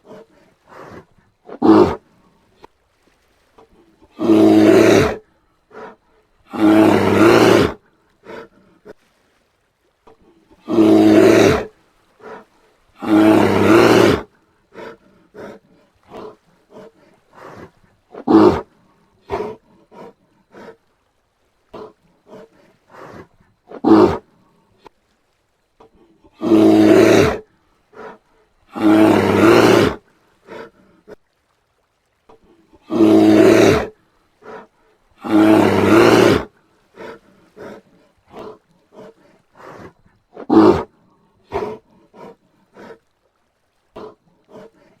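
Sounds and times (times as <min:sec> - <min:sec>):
bear calling: 0:10.6 - 0:18.7, 0:32.9 - 0:40.9.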